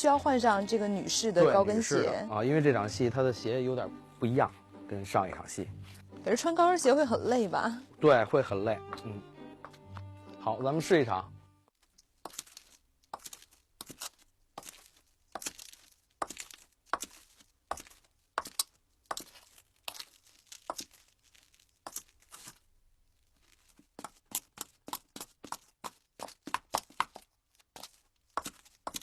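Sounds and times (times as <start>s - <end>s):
high heel footsteps on gritty surface: 5.7s - 6.7s, 8.9s - 10.1s, 12.2s - 29.0s.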